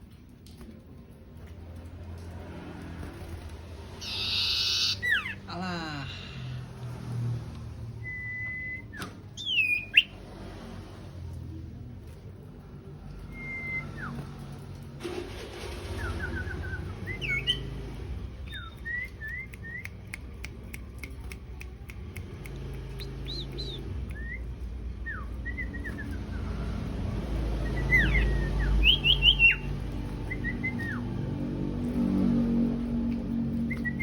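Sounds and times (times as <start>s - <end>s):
songbird chirping and whistling: 4.0s - 5.5s, 8.0s - 10.2s, 13.3s - 14.2s, 15.9s - 17.8s, 18.4s - 20.2s, 22.9s - 26.8s, 27.5s - 31.1s, 33.6s - 34.0s
dry ticks: 18.6s - 24.6s.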